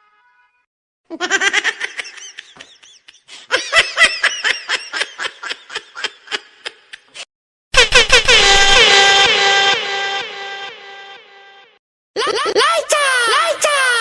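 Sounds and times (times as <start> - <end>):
laughter sound effect: 1.1 - 7.2, 7.8 - 9.7.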